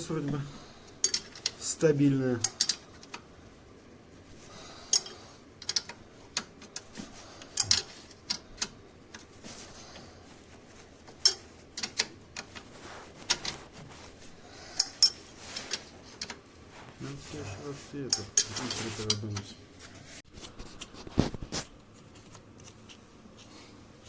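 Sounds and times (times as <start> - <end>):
hand tools clinking on metal: 1.0 - 1.7, 2.4 - 2.8, 11.2 - 12.1, 14.7 - 16.4, 18.0 - 19.5.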